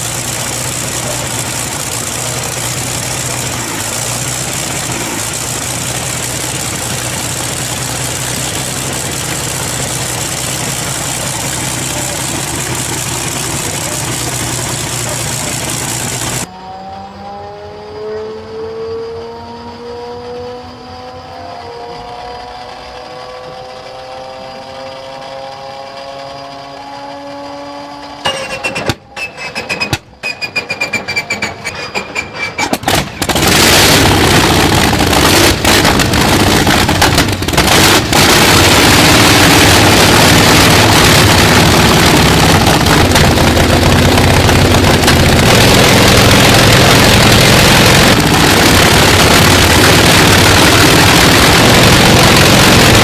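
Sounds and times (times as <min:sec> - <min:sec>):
engine crackles and pops: 0:00.0 - 0:16.5, 0:29.7 - 0:53.0
high-performance engine running: 0:00.0 - 0:29.1, 0:32.7 - 0:53.0.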